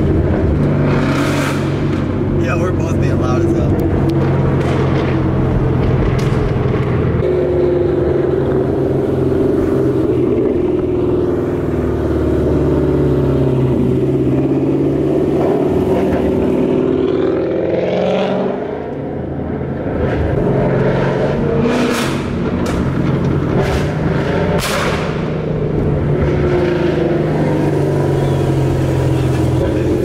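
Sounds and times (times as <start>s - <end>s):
car engine while driving: 0.0s - 30.0s.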